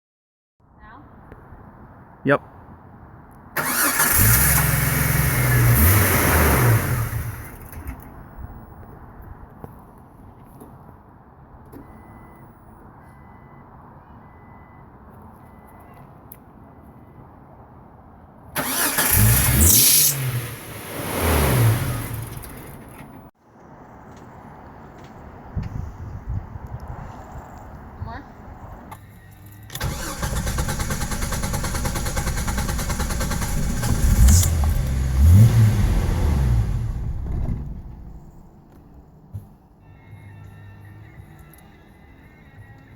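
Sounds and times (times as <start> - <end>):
car engine cranking: 3.6 - 8.2, 18.6 - 23.3, 29.7 - 38.6.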